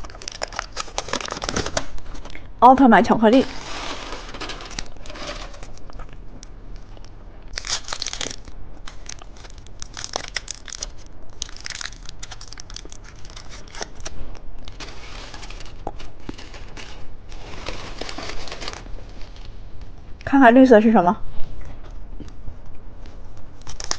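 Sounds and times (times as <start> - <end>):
plastic wrapper crinkling: 0.0 - 2.5, 3.3 - 6.2, 6.8 - 19.2, 23.5 - 23.9.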